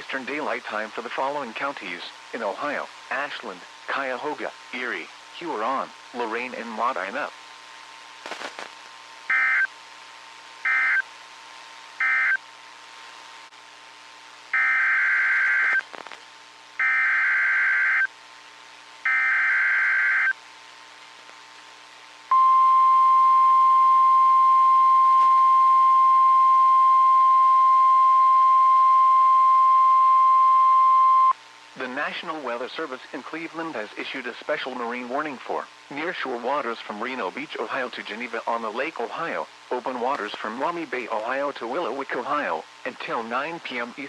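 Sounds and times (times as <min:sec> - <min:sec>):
steady warning alarm tone: 0:09.3 - 0:09.7, 0:10.7 - 0:11.0, 0:12.0 - 0:12.4, 0:14.6 - 0:15.8, 0:16.8 - 0:18.1, 0:19.1 - 0:20.4.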